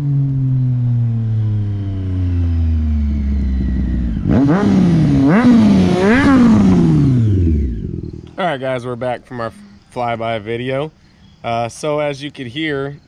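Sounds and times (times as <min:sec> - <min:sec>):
motorcycle engine accelerating: 0:00.0 - 0:10.0.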